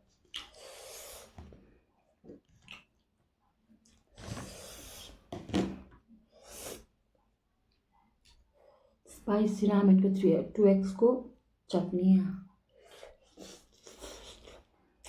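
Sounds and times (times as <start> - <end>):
chewing noises: 0.2 - 1.2, 2.3 - 3.1, 12.8 - 14.7.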